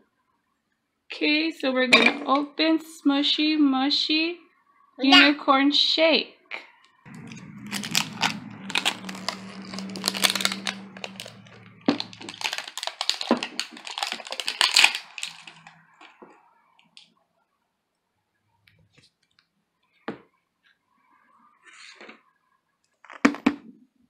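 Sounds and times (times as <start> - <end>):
plastic packaging crinkling: 7.1 - 16.2
low steady hum: 7.1 - 17.0.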